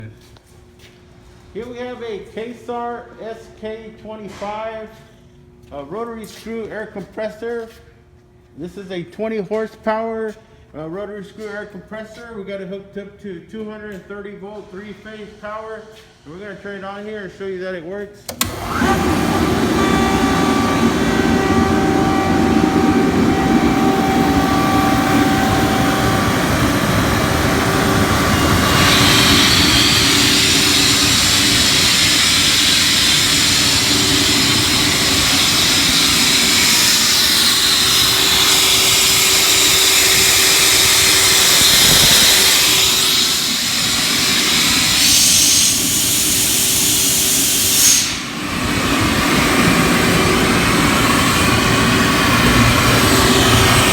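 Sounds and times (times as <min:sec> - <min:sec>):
air compressor humming: 0:18.2 - 0:53.9
loud hiss: 0:18.5 - 0:53.9.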